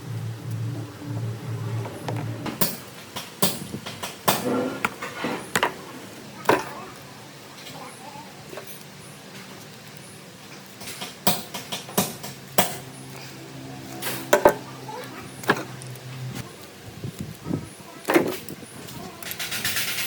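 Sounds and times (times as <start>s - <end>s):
low steady hum: 0.0s - 8.2s.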